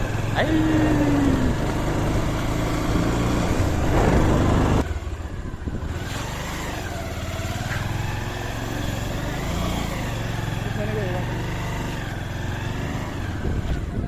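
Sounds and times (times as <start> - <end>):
motorcycle engine running: 0.0 - 14.0
wind rush on microphone: 3.4 - 6.2, 13.2 - 14.0.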